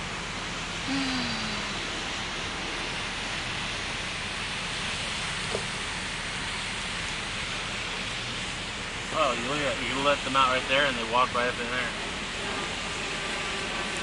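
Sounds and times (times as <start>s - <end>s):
heavy rain hiss: 0.0s - 14.0s.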